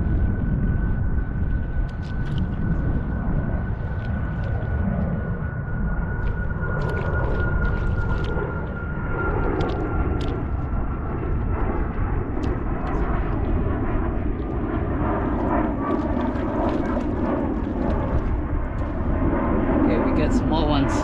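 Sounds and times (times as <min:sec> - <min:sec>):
steady rushing outdoor noise: 0:00.0 - 0:21.0.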